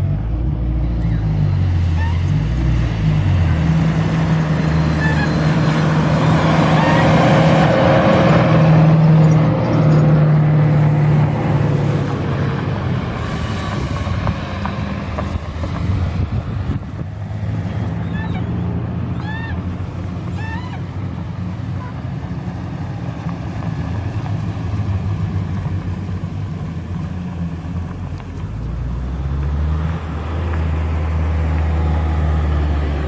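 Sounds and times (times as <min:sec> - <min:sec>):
vehicle engine humming: 0:00.0 - 0:33.0.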